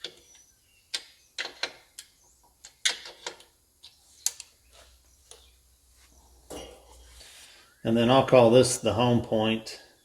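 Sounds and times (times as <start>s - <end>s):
sharp irregular clicks and knocks: 0.0s - 4.6s.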